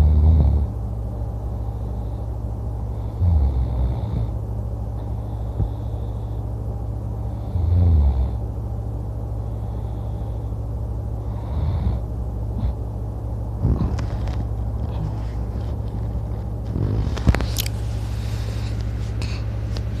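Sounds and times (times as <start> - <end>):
man snoring: 0.0 - 0.7, 2.9 - 4.4, 7.2 - 8.4, 11.2 - 12.8, 13.6 - 14.0, 16.6 - 17.3
steady low hum: 0.0 - 20.0.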